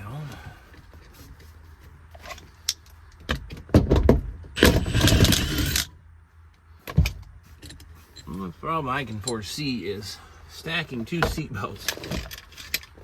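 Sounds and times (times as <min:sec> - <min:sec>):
scraping burst: 0:04.6 - 0:05.9.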